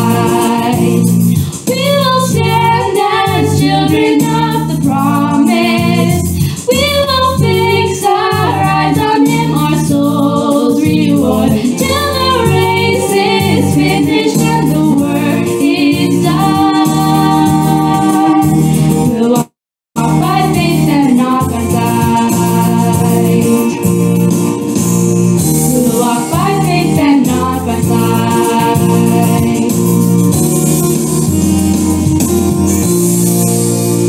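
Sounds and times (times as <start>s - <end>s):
voices singing a devotional song: 0.0s - 24.0s, 25.7s - 30.4s
instrumental backing with bass: 0.0s - 34.0s.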